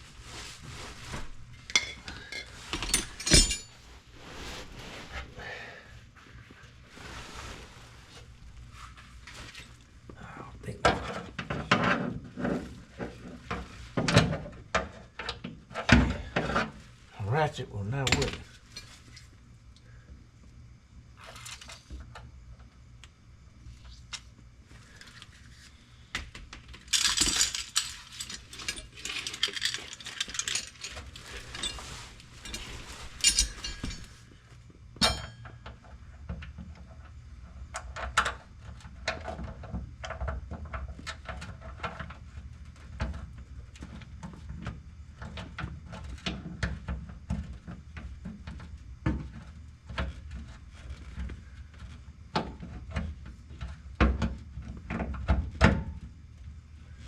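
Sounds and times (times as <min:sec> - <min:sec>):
metal tools clinking and rattling: 0:01.6 - 0:03.8, 0:18.0 - 0:19.3, 0:26.8 - 0:34.3, 0:35.0 - 0:35.6.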